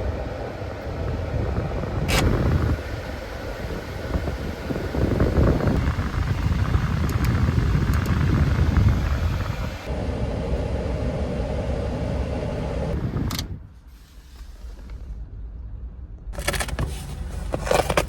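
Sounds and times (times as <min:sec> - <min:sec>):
vehicle engine rumble: 0:00.0 - 0:18.0.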